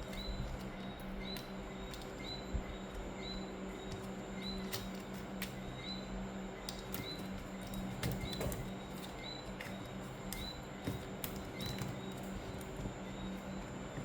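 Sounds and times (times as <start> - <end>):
small bird chirping: 0.0 - 10.7
steady low hum: 0.0 - 14.0.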